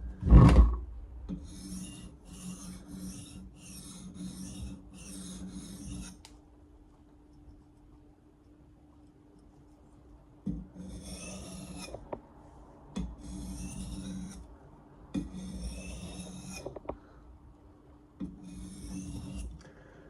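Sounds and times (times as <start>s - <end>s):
blade rasping on sharpener: 1.3s - 6.2s, 10.8s - 12.1s, 13.1s - 14.5s, 15.2s - 16.8s, 18.3s - 19.6s.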